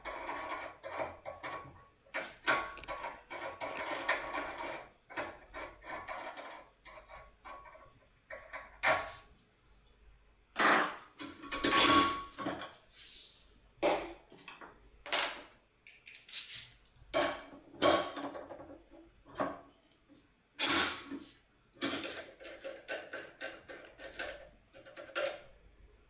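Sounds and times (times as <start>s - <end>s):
lock pick clicking and scraping: 21.8s - 25.4s.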